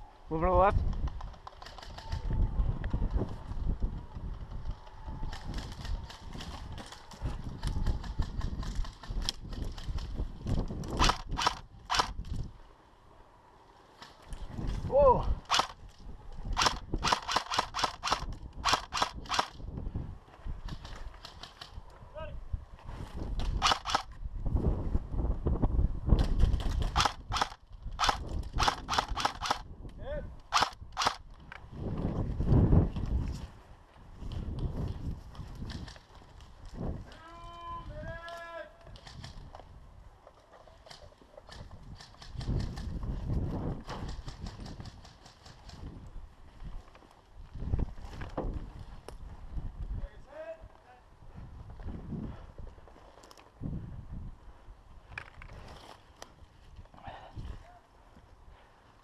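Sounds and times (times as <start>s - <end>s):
airsoft gun shots: 11.0s - 12.2s, 15.5s - 15.8s, 16.6s - 19.5s, 23.6s - 24.1s, 26.8s - 29.6s, 30.5s - 31.2s
sharp snaps: 26.8s - 31.2s.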